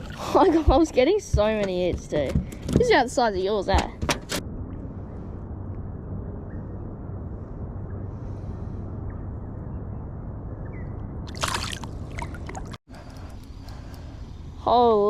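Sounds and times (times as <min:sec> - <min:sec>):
water sloshing: 0:00.0 - 0:02.6, 0:11.3 - 0:12.8
low rumble: 0:04.4 - 0:15.0
water splash: 0:11.3 - 0:12.8.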